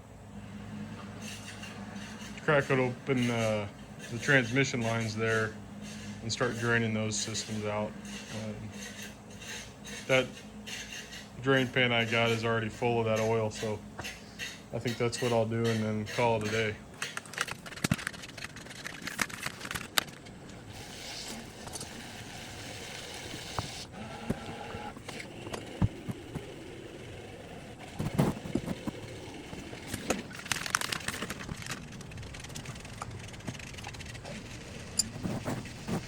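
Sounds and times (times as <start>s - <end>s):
hand tools clinking on metal: 1.4s - 17.3s.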